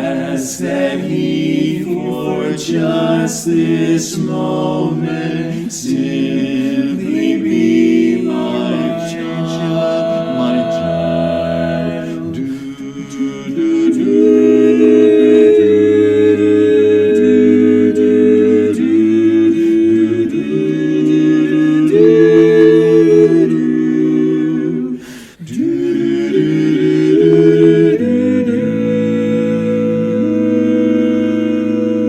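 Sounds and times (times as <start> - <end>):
men singing a cappella harmony: 0.0 - 32.0.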